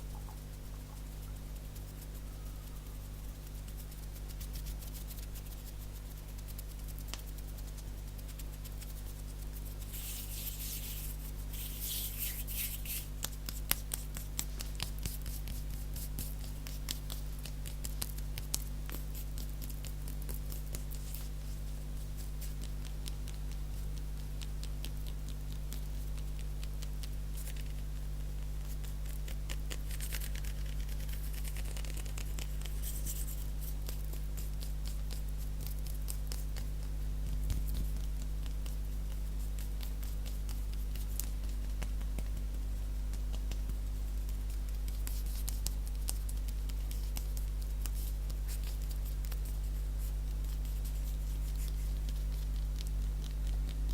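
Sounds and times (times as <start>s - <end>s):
steady low hum: 0.0s - 53.9s
palms rubbing: 9.7s - 15.3s.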